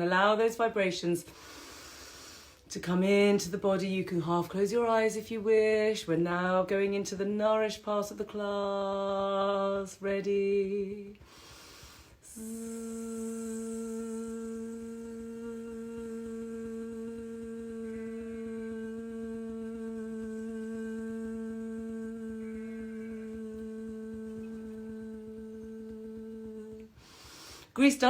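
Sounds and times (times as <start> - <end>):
woman humming a low note: 12.3 - 27.0.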